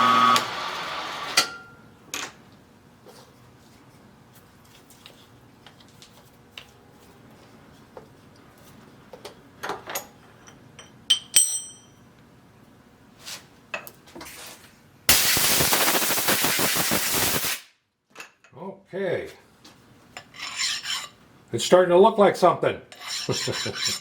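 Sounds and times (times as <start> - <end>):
metal tools clicking and knocking: 9.9 - 11.9
ringing metal clink: 10.8 - 12.0.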